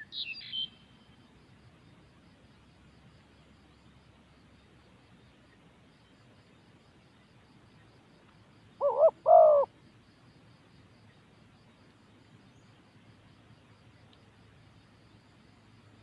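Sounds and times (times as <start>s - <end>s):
dove cooing: 8.8s - 9.7s.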